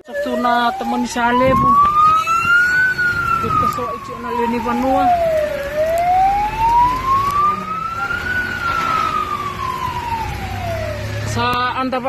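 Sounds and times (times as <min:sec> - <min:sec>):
siren wailing: 0:00.0 - 0:12.0.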